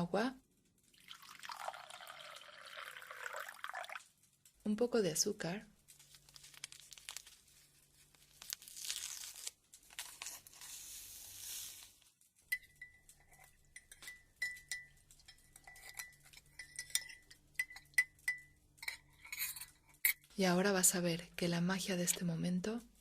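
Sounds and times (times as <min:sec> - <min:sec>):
sugar pouring into cup: 0:00.9 - 0:04.1, 0:09.9 - 0:19.8
spoon clinking against cup: 0:12.5 - 0:20.2.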